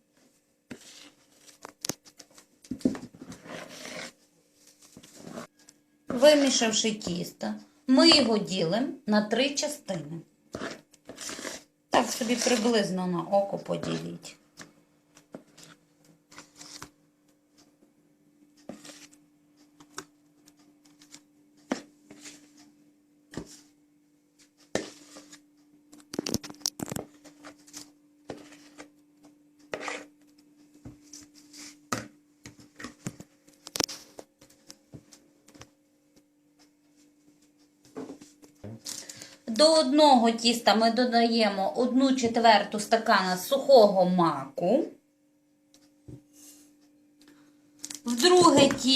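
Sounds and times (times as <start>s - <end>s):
spoon scraping cake batter: 0.7s - 7.4s, 10.5s - 17.0s, 18.6s - 23.8s, 24.4s - 35.6s
faint steady hum: 2.2s - 48.9s.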